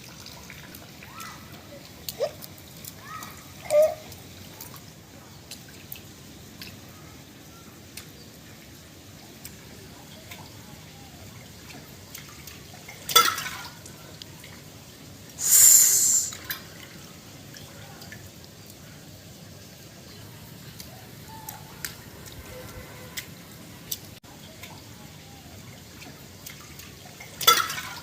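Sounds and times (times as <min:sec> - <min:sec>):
rainwater dripping: 0:00.0 - 0:28.0
water splashing: 0:15.4 - 0:16.4
hissing water splash: 0:15.4 - 0:16.7.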